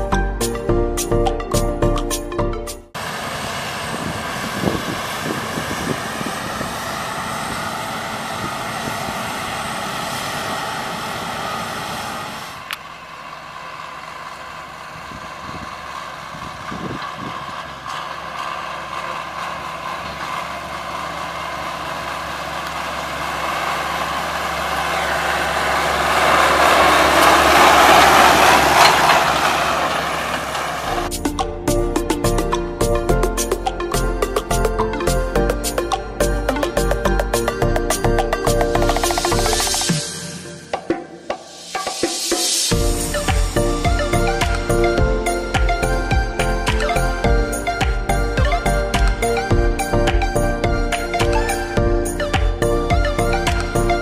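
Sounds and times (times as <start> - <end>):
machine passing by: 3.0 - 31.2
harvest machinery engines running: 3.0 - 40.6, 42.2 - 54.0.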